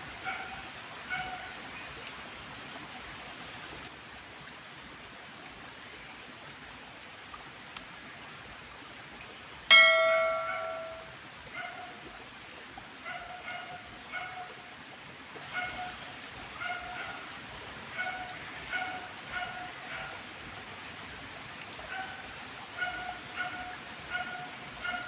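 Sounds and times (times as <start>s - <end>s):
bell-like metallic strike: 9.7s - 11.1s.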